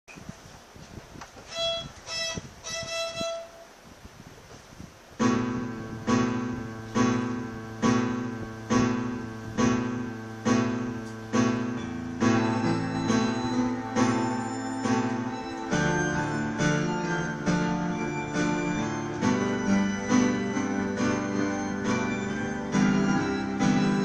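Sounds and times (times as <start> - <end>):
keyboard chords: 5.2 - 24.0
sustained bass: 5.2 - 24.0
violin-like lead notes: 10.8 - 24.0.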